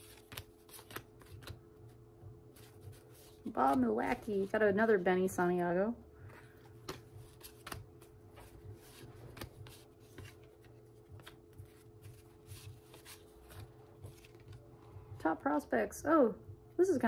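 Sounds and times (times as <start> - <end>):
cards flipped by hand: 0.0 - 4.5, 6.3 - 14.6.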